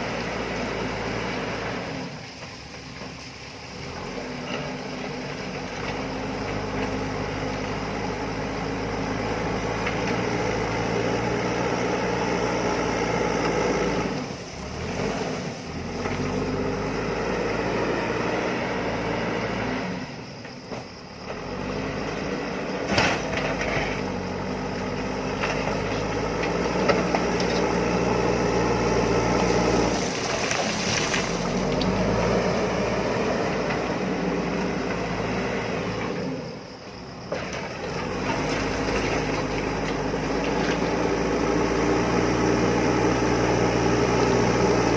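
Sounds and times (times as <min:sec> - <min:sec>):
diesel engine under load: 0:00.0 - 0:44.9.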